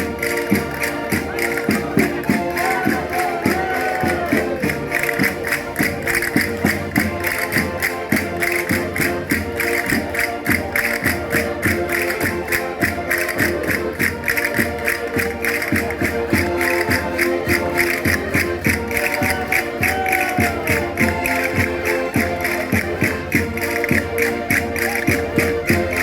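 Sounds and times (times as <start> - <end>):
concertinas playing dance tune: 0.0 - 26.0
fast steady beat: 0.0 - 26.0.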